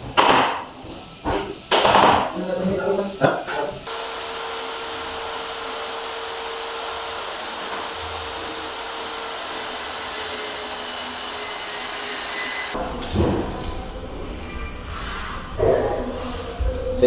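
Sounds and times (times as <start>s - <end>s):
electric power tool humming: 3.9s - 12.8s.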